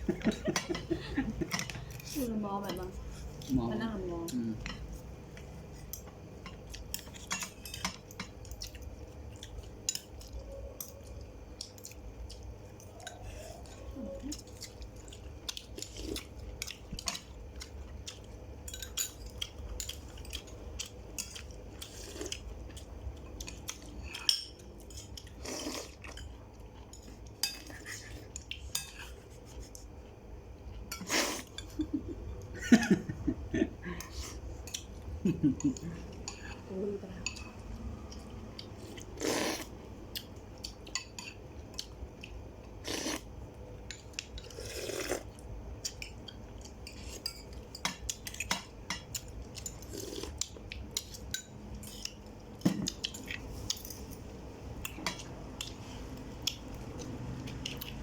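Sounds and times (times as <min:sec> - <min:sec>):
low steady hum: 0:00.0 - 0:58.0
utensils clinking against dishes: 0:00.1 - 0:02.9, 0:05.7 - 0:08.8, 0:09.8 - 0:11.2, 0:15.8 - 0:22.4, 0:23.5 - 0:29.2, 0:30.8 - 0:31.9, 0:40.9 - 0:41.4, 0:45.8 - 0:50.0, 0:50.9 - 0:54.3.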